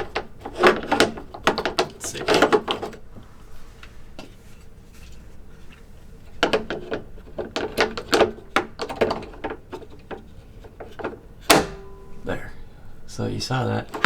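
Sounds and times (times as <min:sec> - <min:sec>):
plastic clicks and knocks: 0:00.0 - 0:03.0, 0:06.3 - 0:12.0.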